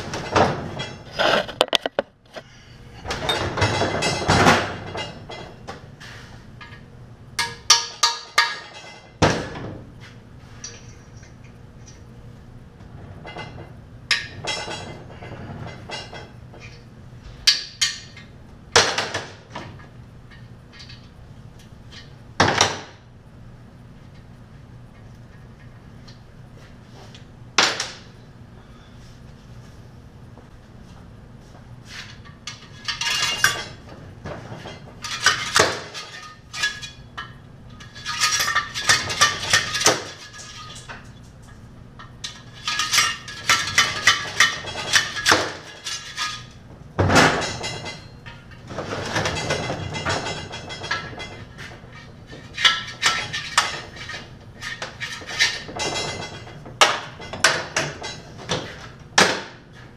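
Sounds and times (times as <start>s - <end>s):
metal parts clinking: 34.6s - 41.2s, 42.0s - 46.5s.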